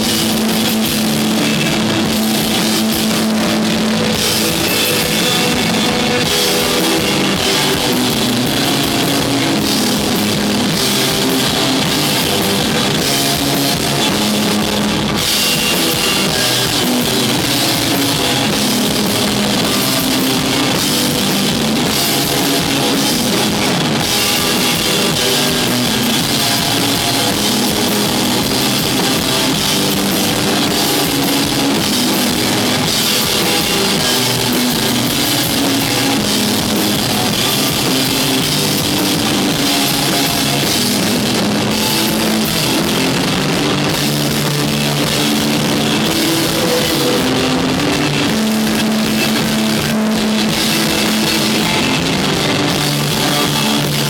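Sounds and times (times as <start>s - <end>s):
drum kit: 0.0s - 54.0s
electric guitar: 0.0s - 54.0s.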